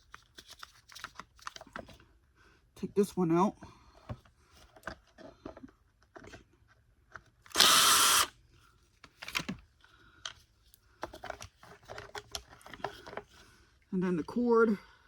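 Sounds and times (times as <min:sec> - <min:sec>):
cordless drill whirring: 0:07.5 - 0:08.3.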